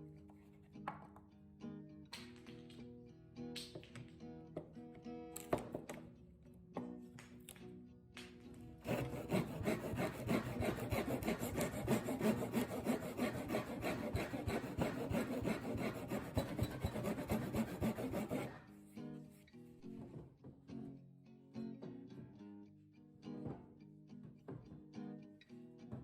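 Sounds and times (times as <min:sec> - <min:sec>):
hand saw cutting wood: 0:08.8 - 0:18.6.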